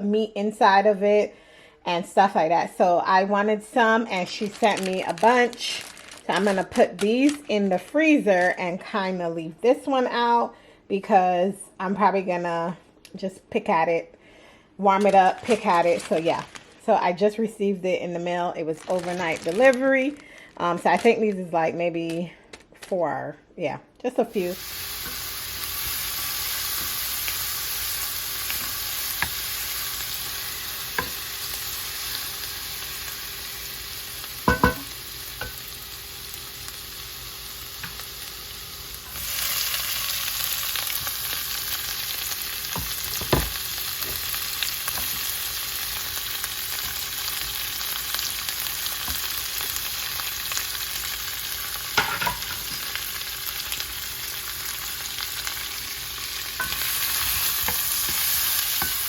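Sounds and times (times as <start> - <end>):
food sizzling in a pan: 24.3 - 59.0
utensil knocking on pan: 31.0 - 31.2, 34.5 - 35.6, 42.8 - 44.2.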